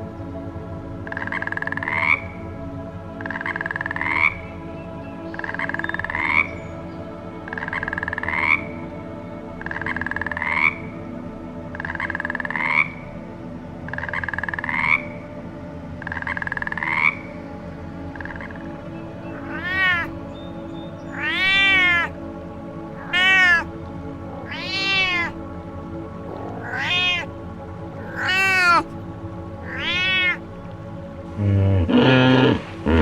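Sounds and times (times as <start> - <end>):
animal call rising in pitch: 19.4 - 20.1, 21.2 - 22.1, 23.0 - 23.7, 24.4 - 25.4, 26.3 - 27.3, 28.0 - 28.9, 29.6 - 30.4.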